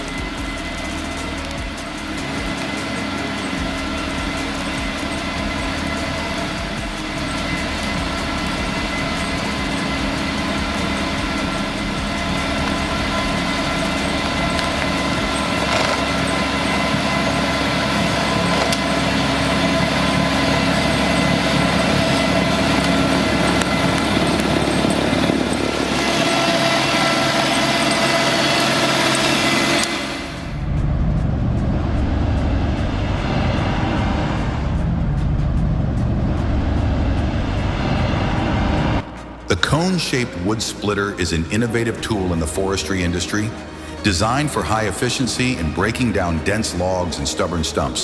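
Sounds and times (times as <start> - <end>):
machine engine running: 0.0 - 48.0.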